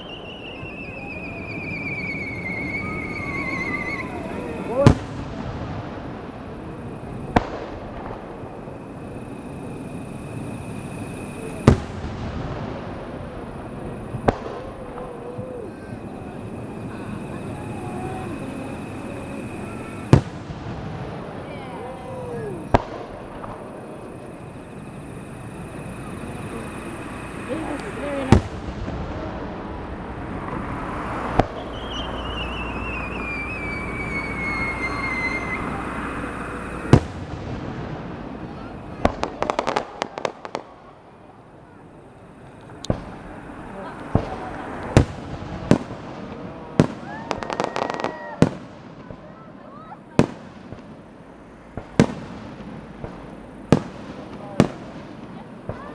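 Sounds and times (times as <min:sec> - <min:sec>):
falling firework whistle: 0:00.0 - 0:05.8, 0:06.7 - 0:29.6, 0:30.3 - 0:40.8, 0:41.7 - 0:50.9
firework bang: 0:00.0 - 0:41.1, 0:42.4 - 0:55.9
background noise: 0:00.0 - 0:55.9
fireworks shells bursting: 0:30.4 - 0:40.8.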